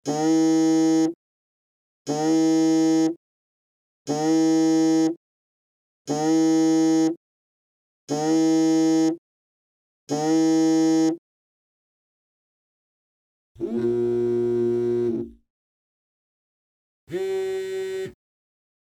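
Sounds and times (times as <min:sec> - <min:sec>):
phone vibrating: 0:17.1 - 0:18.2.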